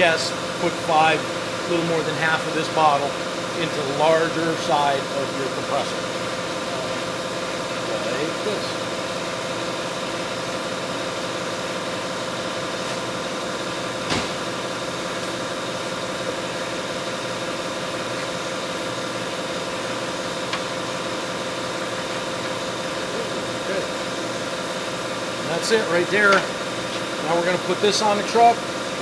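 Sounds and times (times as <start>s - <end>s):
machine humming: 0.0s - 29.0s
sharp click: 14.1s - 14.5s.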